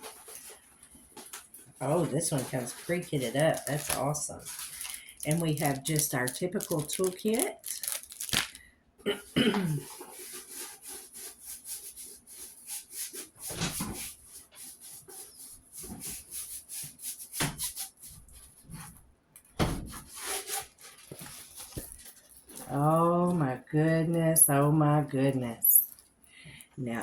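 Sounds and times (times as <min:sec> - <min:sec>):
canvas and plastic rustling: 0:00.0 - 0:08.6, 0:19.7 - 0:24.0.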